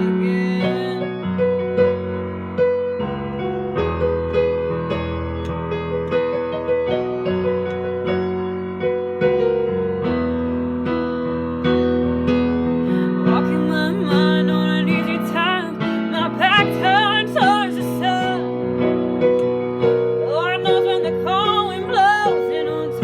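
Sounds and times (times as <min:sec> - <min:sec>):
slow piano ballad: 0:00.0 - 0:23.0.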